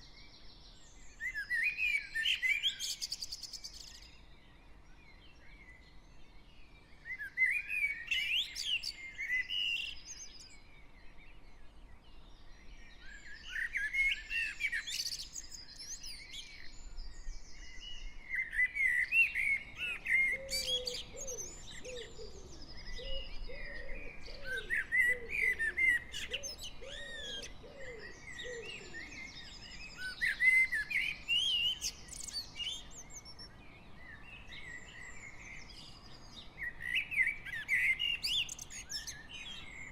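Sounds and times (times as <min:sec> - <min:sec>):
songbird singing rich phrase: 0:13.4 - 0:39.9.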